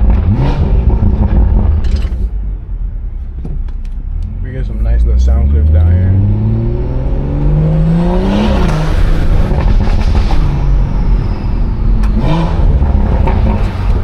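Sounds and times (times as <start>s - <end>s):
exhaust crackles and pops: 0.0s - 2.4s, 8.3s - 11.2s, 11.8s - 14.0s
car engine accelerating: 0.0s - 14.0s.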